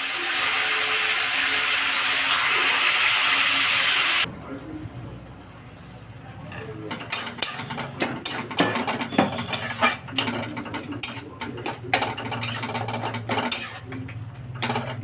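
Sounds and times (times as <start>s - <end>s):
kitchen utensils clattering: 6.4s - 15.0s.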